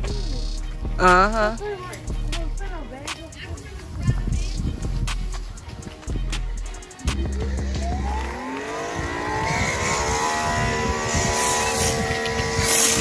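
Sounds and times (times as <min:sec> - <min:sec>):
pressure washer motor whine: 0:07.2 - 0:13.0.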